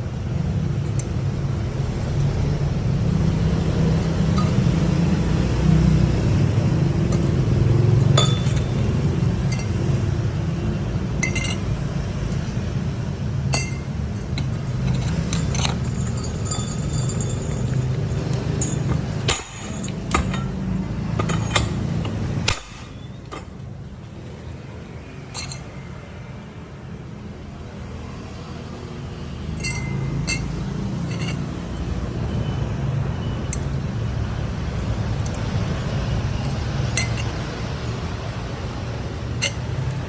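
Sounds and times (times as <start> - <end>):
metal clinks and taps: 3.6 - 10.2, 11.0 - 23.7, 25.3 - 25.8, 29.5 - 32.4, 33.2 - 34.1, 35.2 - 38.3, 38.9 - 40.0.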